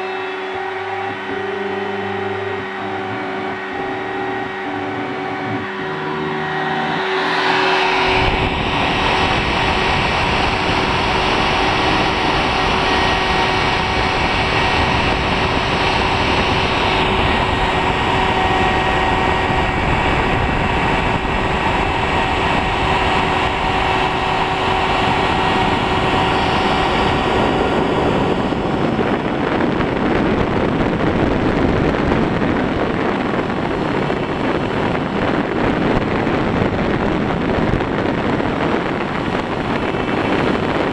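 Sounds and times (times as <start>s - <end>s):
cutter engraving metal: 0.0s - 28.8s
machine spindle whining: 0.0s - 40.9s.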